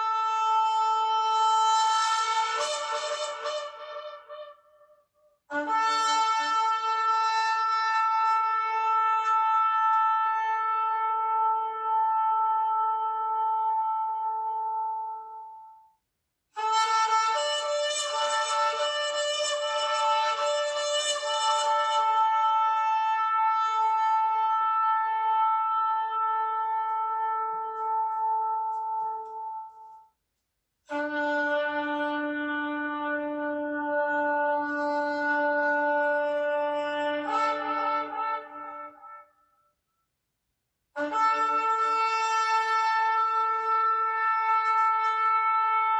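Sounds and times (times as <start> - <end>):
shofar blast: 0.0 - 4.9, 5.5 - 15.4, 16.6 - 30.0, 30.9 - 39.4, 41.0 - 45.9.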